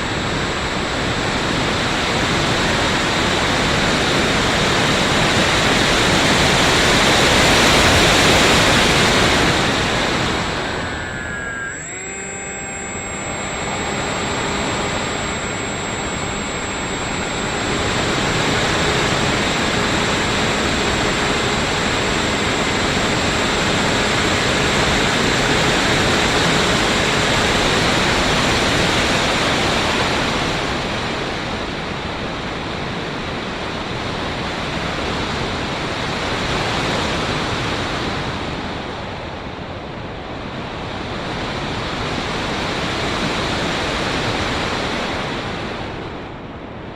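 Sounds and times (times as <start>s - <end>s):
faint electric motor whine: 0.0s - 31.6s.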